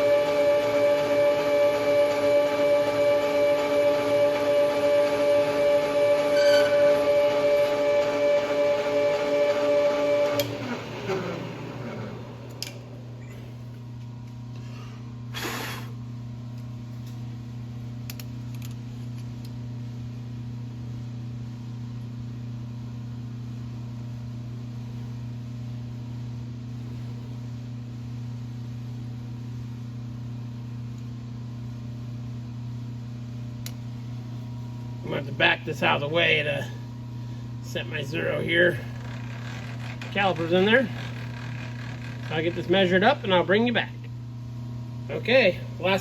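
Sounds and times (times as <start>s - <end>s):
metal lathe humming: 0.0s - 13.9s, 37.6s - 43.8s.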